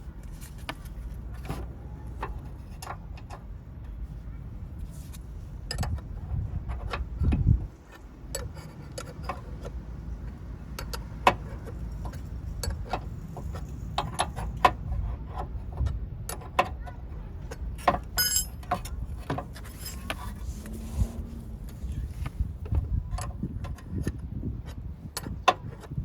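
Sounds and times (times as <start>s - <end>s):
tools rattling: 17.5s - 20.8s
hand tools clinking on metal: 17.8s - 18.9s
steady low rumble: 18.8s - 25.2s.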